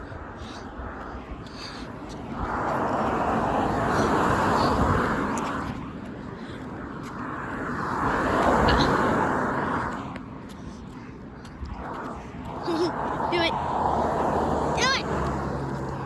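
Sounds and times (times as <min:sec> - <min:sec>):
vehicles passing: 0:00.0 - 0:16.0.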